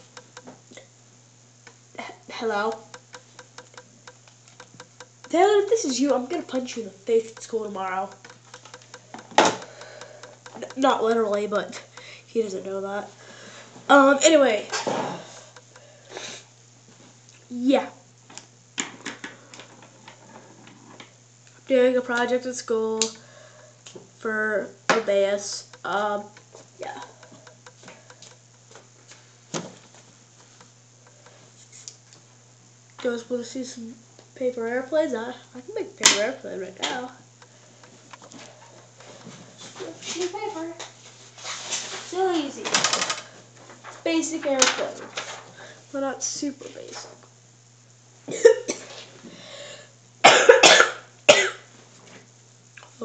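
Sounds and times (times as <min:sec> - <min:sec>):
faint clicks and taps: 0:00.0 - 0:00.7, 0:01.6 - 0:01.8, 0:02.4 - 0:12.6, 0:14.2 - 0:15.8, 0:24.9 - 0:32.2, 0:36.8 - 0:39.4
low electrical hum: 0:00.0 - 0:53.0
boy coughing: 0:48.3 - 0:48.9, 0:50.2 - 0:51.7.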